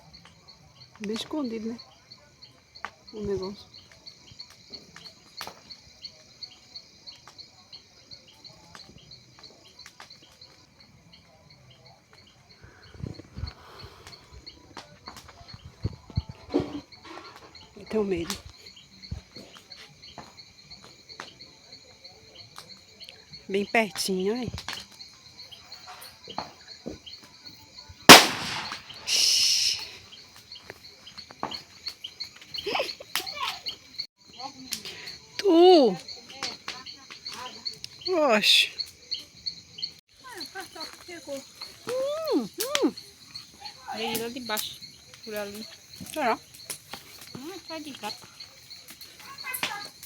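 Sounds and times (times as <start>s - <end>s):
insect chirping: 0.0s - 50.0s
firecracker bang: 28.1s - 29.9s
sharp pops: 28.1s - 30.0s
short hiss: 28.1s - 30.0s.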